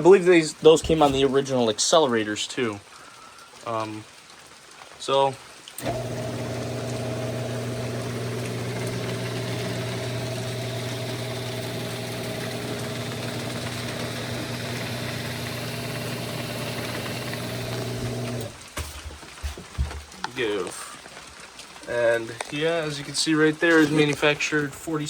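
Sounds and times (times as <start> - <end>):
garage door opener motor hum: 5.8 - 18.6.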